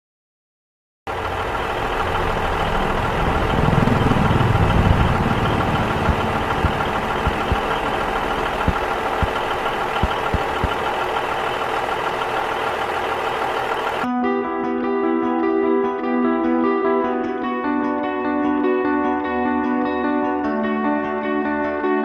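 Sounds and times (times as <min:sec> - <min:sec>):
engine-like hum: 0:01.1 - 0:14.1
low rumble: 0:01.2 - 0:14.1.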